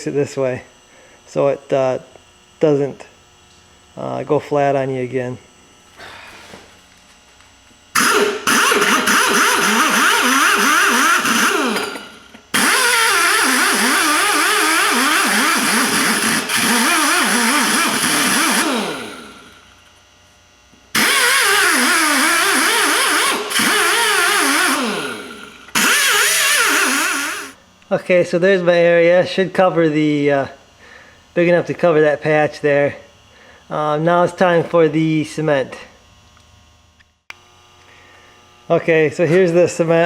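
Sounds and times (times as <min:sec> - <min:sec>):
rotary tyre buffer running: 0:07.9 - 0:20.0, 0:20.7 - 0:27.6.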